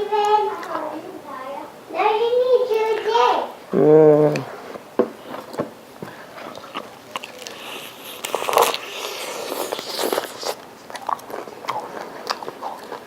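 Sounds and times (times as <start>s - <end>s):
chewing and crunching taco: 5.2s - 13.0s.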